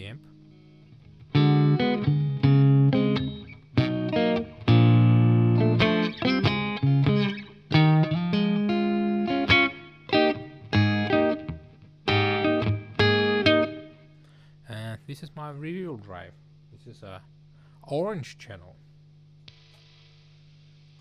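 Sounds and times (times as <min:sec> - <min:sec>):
clean electric guitar: 0:00.0 - 0:14.4.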